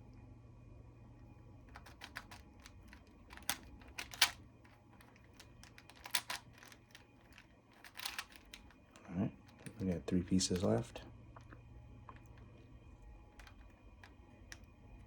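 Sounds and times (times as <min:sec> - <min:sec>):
puzzle cube clicking: 0:01.7 - 0:08.8, 0:13.4 - 0:14.7.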